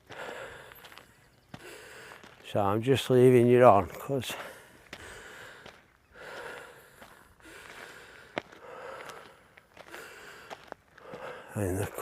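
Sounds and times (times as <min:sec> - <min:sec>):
person breathing close to microphone: 0:00.0 - 0:01.0, 0:01.6 - 0:02.4, 0:04.4 - 0:11.6.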